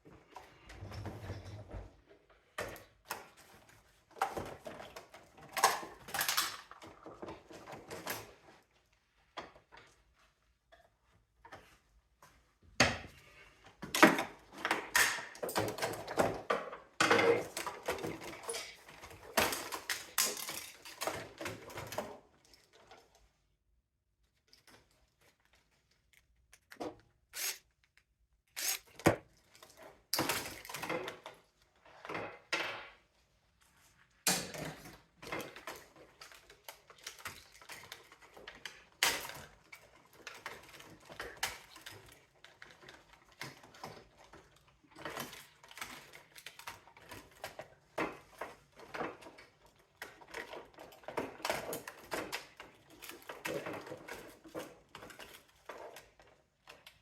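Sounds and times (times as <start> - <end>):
clicks and rattles of screws: 19.6 - 21.3, 25.9 - 29.1.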